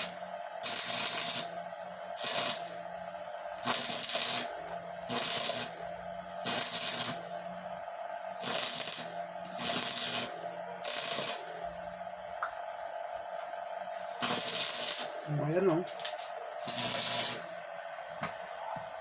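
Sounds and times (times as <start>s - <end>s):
welding arc crackling hiss: 0.0s - 19.0s
transformer humming: 14.2s - 17.6s.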